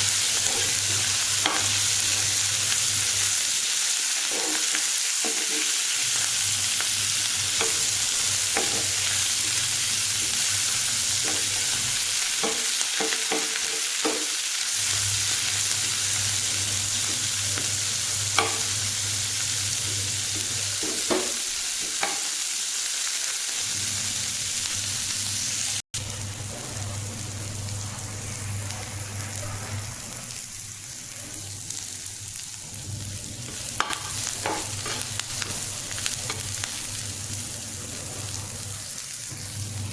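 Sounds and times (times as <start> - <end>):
food sizzling in a pan: 0.0 - 39.9
spoon scraping a pan: 4.2 - 14.3, 16.9 - 18.8, 33.4 - 36.8.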